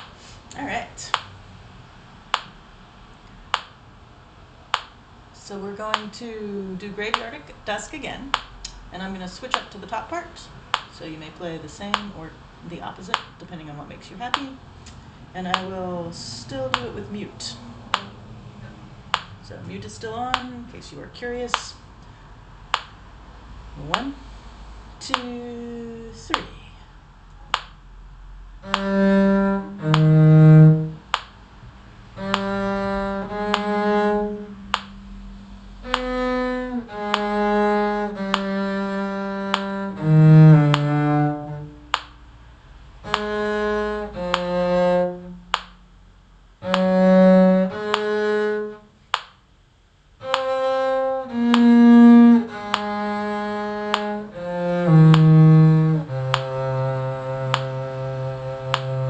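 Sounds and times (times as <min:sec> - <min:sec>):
muted bowed string instrument: 0:14.9 - 0:20.6, 0:28.6 - 0:42.1, 0:42.9 - 0:45.9, 0:46.6 - 0:48.9, 0:50.2 - 0:59.0.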